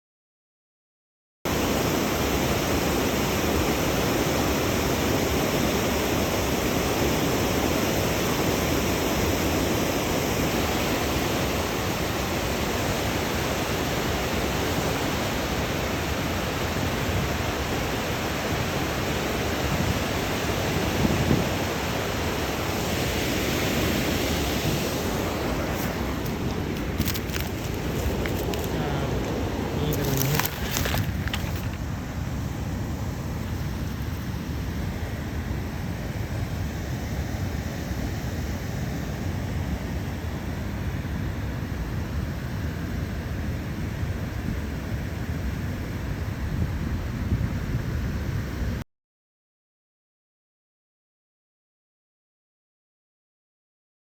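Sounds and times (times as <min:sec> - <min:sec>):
river water rushing: 0:01.5 - 0:36.0.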